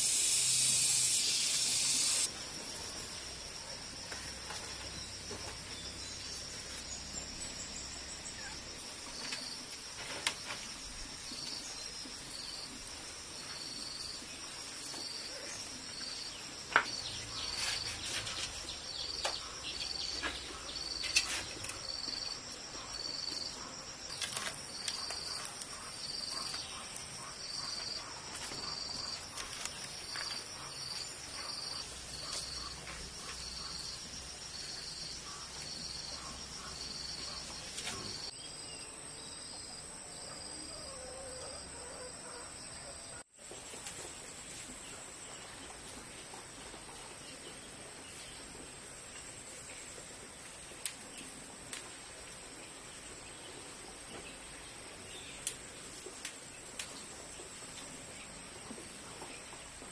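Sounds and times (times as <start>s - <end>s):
insects chirping: 0.0s - 42.4s.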